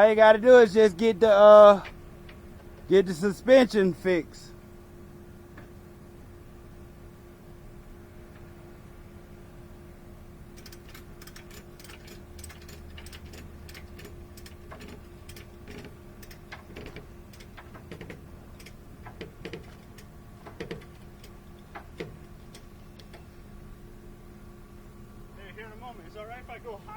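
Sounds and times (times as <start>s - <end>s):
steady low hum: 0.0s - 26.9s
sharp clicks and ticks: 10.6s - 23.2s.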